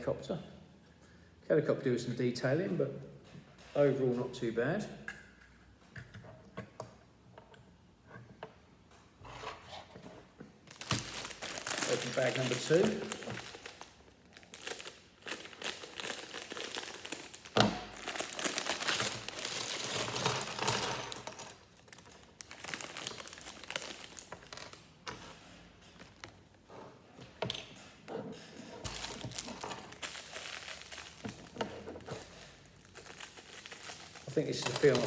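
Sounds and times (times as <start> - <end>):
plastic bag crinkling: 10.6 - 24.9, 26.0 - 26.4, 28.8 - 35.0.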